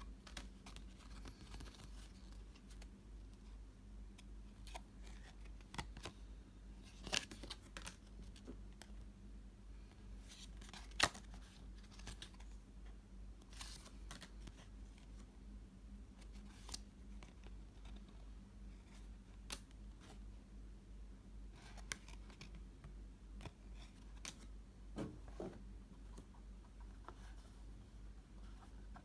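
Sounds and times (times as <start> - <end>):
faint low hum: 0.0 - 29.0
rustling card and plastic: 0.1 - 3.5, 6.8 - 9.0, 10.2 - 12.6, 13.4 - 15.3, 16.1 - 20.2, 21.6 - 22.6.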